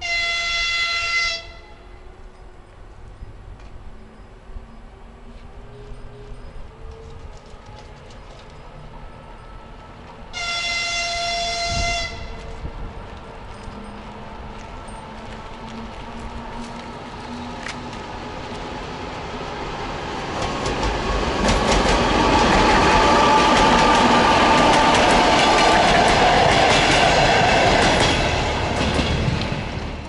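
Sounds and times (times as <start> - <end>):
electric locomotive passing: 0.0 - 30.0
wheels clicking over rail joints: 5.3 - 10.3, 12.4 - 19.4.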